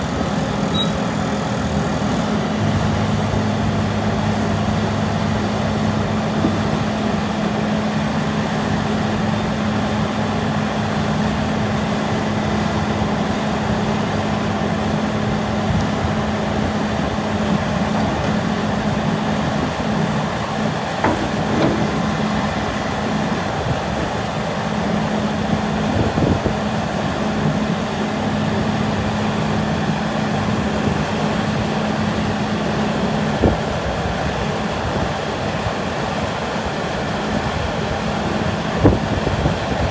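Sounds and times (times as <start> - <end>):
diesel engine running: 0.0 - 36.1
machine knocks: 17.4 - 23.6.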